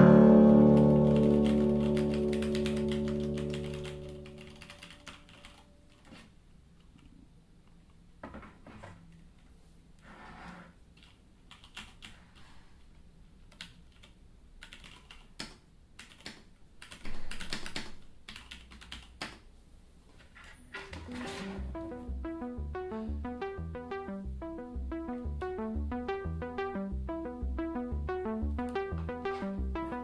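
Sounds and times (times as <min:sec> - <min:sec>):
mechanical keyboard clacks: 0:01.0 - 0:06.0, 0:11.0 - 0:12.2, 0:13.5 - 0:19.4.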